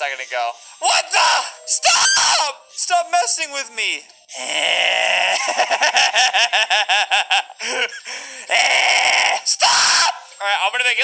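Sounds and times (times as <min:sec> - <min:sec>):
harsh scream: 0:00.8 - 0:02.5, 0:08.5 - 0:10.2
person laughing wildly: 0:04.6 - 0:09.4.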